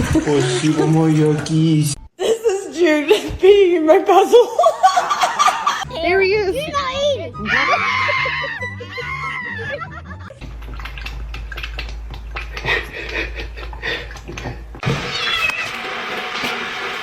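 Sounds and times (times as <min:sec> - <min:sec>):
cat meowing: 0:15.0 - 0:16.0.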